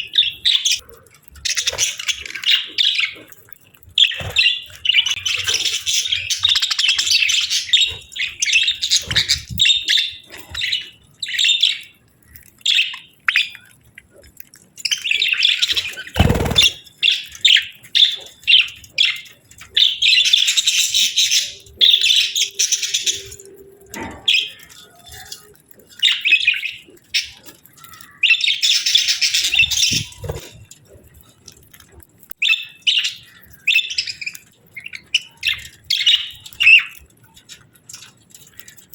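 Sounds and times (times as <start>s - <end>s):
budgerigars chirping: 15.0s - 19.2s, 19.8s - 23.5s.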